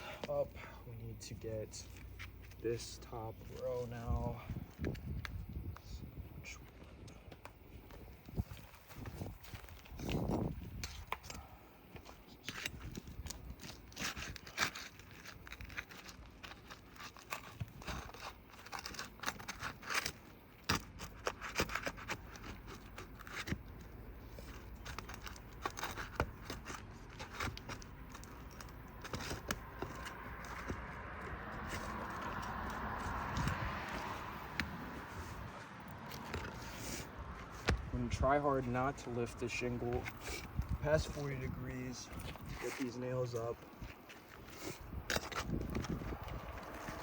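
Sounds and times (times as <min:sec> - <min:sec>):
scraping and clicks on roof shingles: 0:06.6 - 0:38.0, 0:38.6 - 0:47.0.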